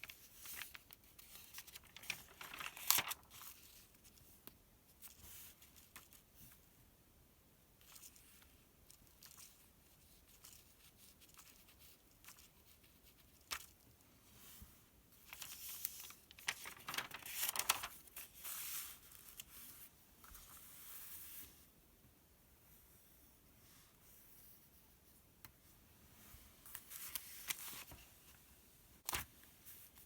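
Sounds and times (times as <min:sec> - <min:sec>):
paper pages rustling: 0:00.0 - 0:04.4, 0:15.2 - 0:21.0, 0:26.6 - 0:28.1, 0:29.0 - 0:30.0.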